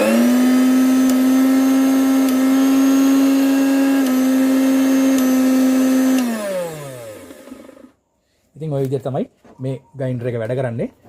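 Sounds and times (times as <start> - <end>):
mixer grinder motor whining: 0.0 - 8.0.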